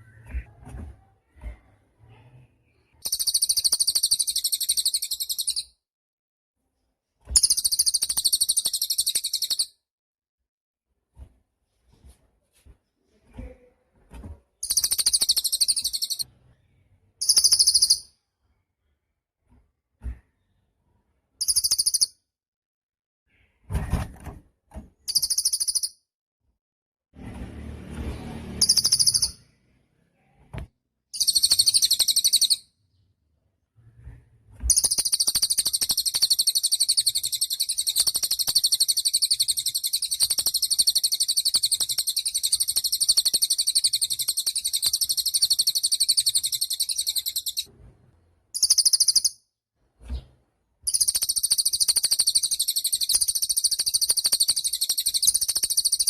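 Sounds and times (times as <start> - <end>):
songbird high trilled singing: 14.6 - 16.2, 17.2 - 18.1, 28.6 - 29.4, 31.2 - 32.6, 34.7 - 47.6, 48.6 - 49.4, 50.9 - 56.0.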